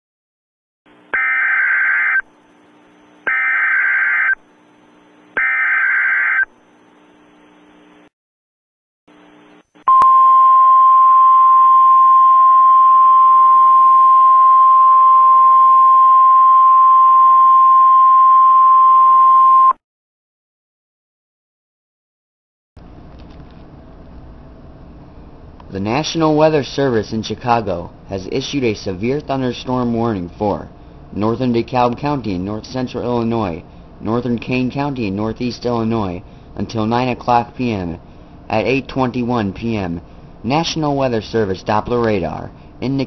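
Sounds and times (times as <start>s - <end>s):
screechy data bursts: 1.2s - 2.2s, 3.3s - 4.4s, 5.4s - 6.5s
steady alarm tone: 1.2s - 2.3s, 3.3s - 4.4s, 5.4s - 6.5s.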